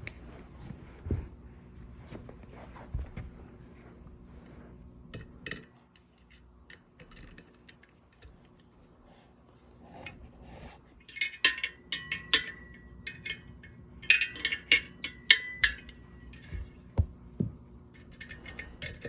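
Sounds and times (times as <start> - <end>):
metal tools clinking: 11.0 - 16.9, 17.9 - 19.0.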